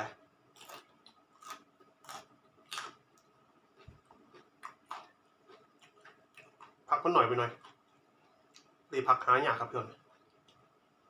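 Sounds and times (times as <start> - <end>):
person chewing with wet clicks: 0.6 - 8.8.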